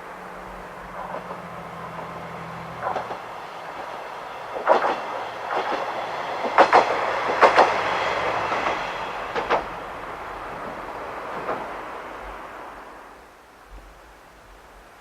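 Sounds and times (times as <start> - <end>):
train running noise: 0.0 - 14.0
train wheels clacking over rail joints: 0.6 - 12.4.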